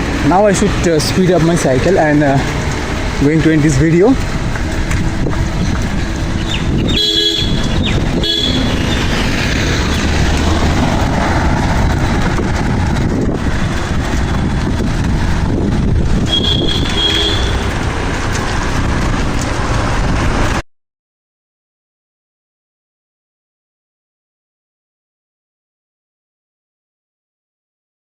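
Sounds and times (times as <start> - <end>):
rushing traffic noise: 0.0 - 20.6
vehicle horn toots: 6.9 - 9.0, 16.2 - 17.8.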